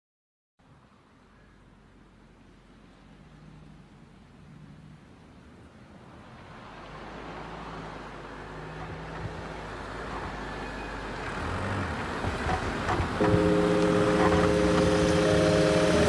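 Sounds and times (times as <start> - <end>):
rushing noise: 13.2 - 16.0.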